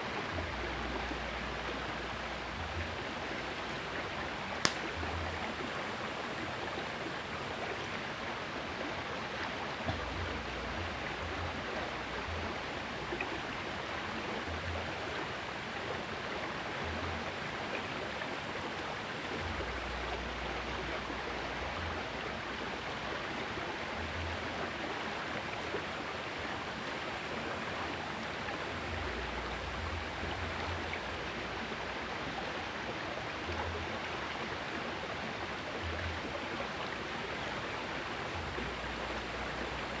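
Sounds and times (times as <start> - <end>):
river water running: 0.0 - 40.0
faint clicks: 4.6 - 5.0.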